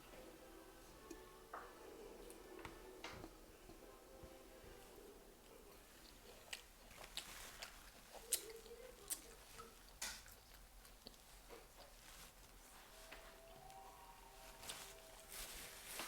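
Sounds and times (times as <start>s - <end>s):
crunchy chewing: 4.7s - 16.0s.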